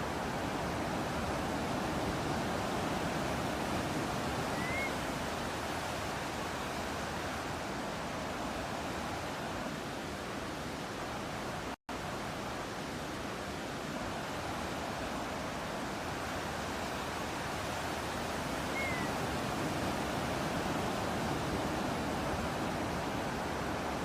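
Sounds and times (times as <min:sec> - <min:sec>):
ocean surf: 0:00.0 - 0:24.0
rising bird chirp: 0:04.5 - 0:05.0, 0:18.7 - 0:19.2.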